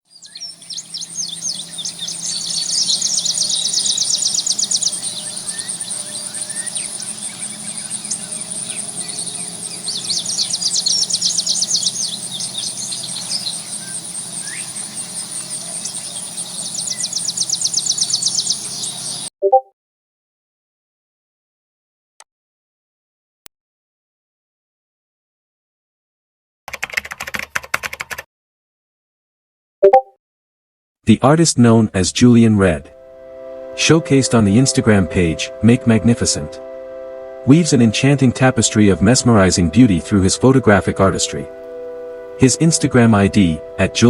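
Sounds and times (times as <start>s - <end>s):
high insect drone: 0.1s - 19.3s, 32.9s - 44.0s
rapid chirps: 0.1s - 19.3s.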